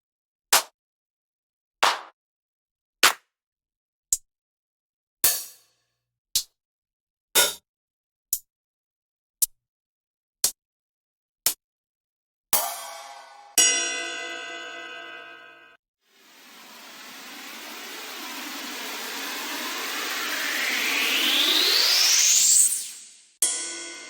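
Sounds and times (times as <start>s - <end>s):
hand-clap samples: 1.8s - 2.2s, 3.0s - 3.3s
cymbal ringing: 12.6s - 20.9s, 23.4s - 24.0s.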